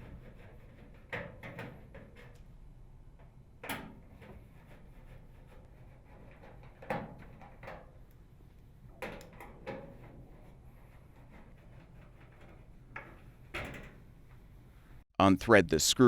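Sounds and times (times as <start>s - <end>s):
screwdriver clacking on sheet metal: 0.0s - 2.5s, 3.2s - 8.0s, 8.9s - 14.0s.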